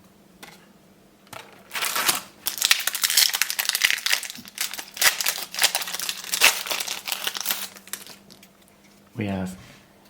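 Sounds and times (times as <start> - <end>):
wrapper crinkling and tearing: 1.4 - 8.5.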